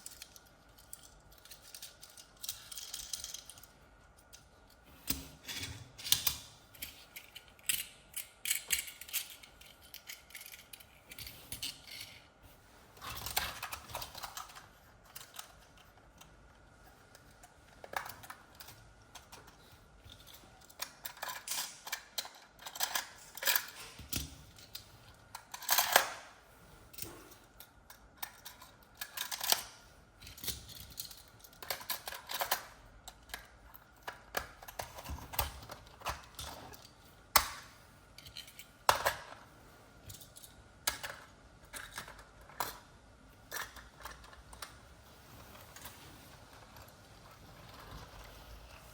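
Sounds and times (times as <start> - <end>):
plastic toys clicking and tapping: 0.0 - 4.5, 17.2 - 26.2, 27.8 - 36.6.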